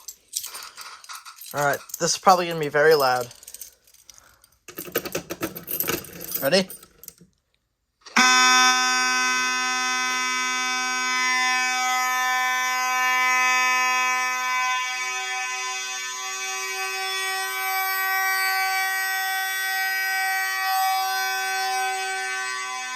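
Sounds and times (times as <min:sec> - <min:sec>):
fire alarm horns: 0:08.1 - 0:22.9.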